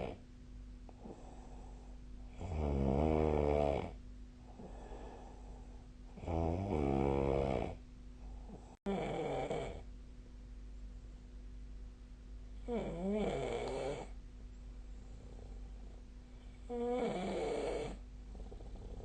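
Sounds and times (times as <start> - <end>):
person snoring: 0.0 - 0.2, 2.3 - 5.6, 6.2 - 7.8, 8.5 - 9.8, 12.6 - 14.2, 16.6 - 19.0
soft breathing: 0.9 - 2.3, 4.4 - 6.2, 14.8 - 16.8, 17.8 - 19.0.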